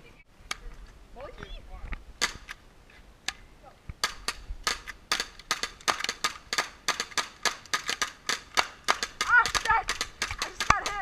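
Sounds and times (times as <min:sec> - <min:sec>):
airsoft guns popping: 0:02.2 - 0:02.6, 0:03.3 - 0:11.0.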